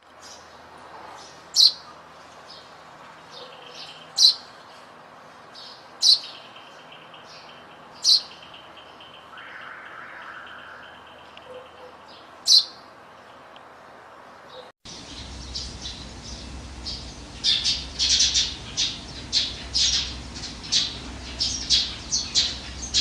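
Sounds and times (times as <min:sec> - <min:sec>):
sparrow chirping: 0:01.2 - 0:01.8, 0:03.3 - 0:04.5, 0:05.6 - 0:12.8, 0:14.5 - 0:23.0
background hiss: 0:14.9 - 0:23.0.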